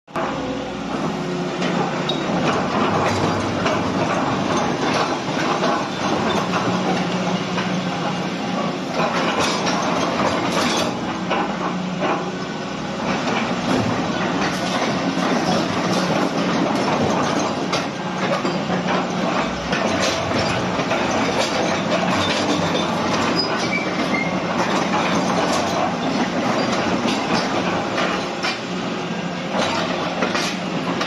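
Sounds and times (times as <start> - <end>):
excavator running: 0.1 - 31.0
metallic clanks: 13.2 - 28.7, 29.5 - 31.0.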